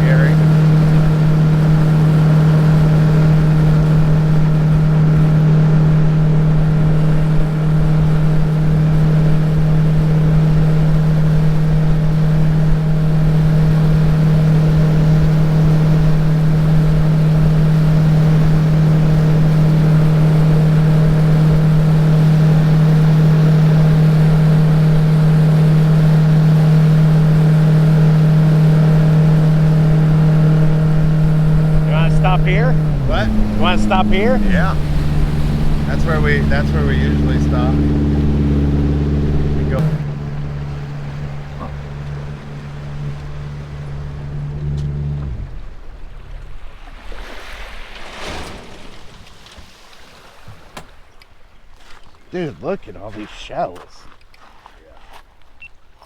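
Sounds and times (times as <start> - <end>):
boat engine running: 0.0 - 47.8, 52.3 - 54.3.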